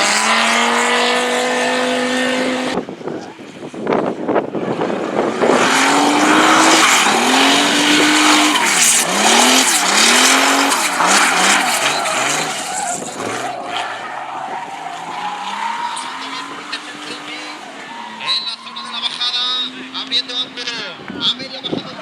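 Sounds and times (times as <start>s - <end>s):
car engine revving: 0.0s - 3.0s, 4.2s - 22.0s
tyre screech: 5.9s - 19.7s.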